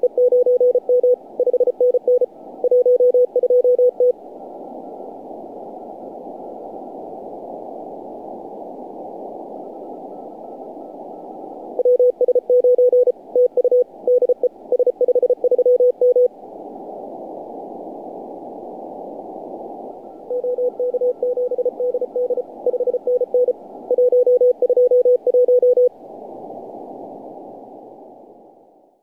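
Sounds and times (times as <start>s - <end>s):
morse code tones: 0.0s - 4.1s, 11.8s - 16.3s, 20.3s - 25.9s.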